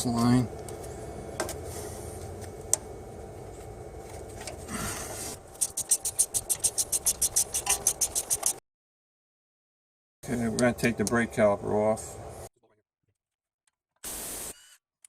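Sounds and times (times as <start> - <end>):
ratchet wrench clicking: 5.6 - 8.6.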